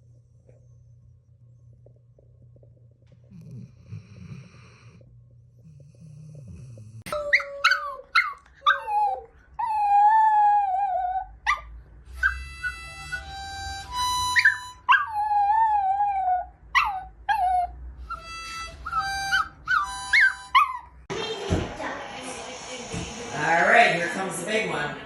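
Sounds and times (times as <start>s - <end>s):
dog howling and yipping: 7.1s - 12.4s, 14.4s - 17.7s
instrument holding notes: 12.3s - 14.9s.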